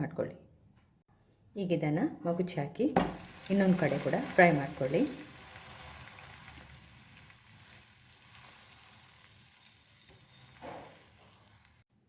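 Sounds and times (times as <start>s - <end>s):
sandwich sizzling on hot pan: 3.0s - 11.8s.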